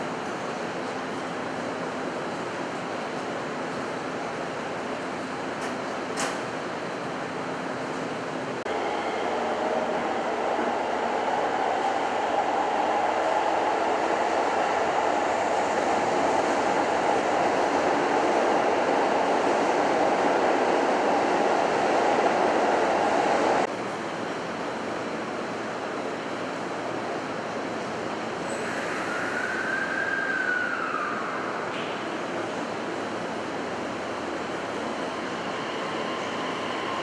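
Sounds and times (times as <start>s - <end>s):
train wheel squeal: 28.4s - 31.7s, 34.8s - 37.0s.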